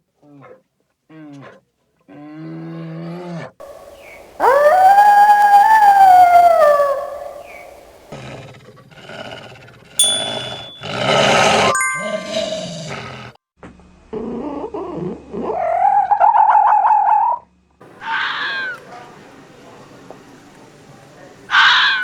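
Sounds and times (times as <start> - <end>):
wild animal howling call: 3.6 - 8.2, 15.5 - 19.2, 21.5 - 22.0
harsh animal calls: 3.6 - 8.3, 17.9 - 19.2, 21.5 - 22.0.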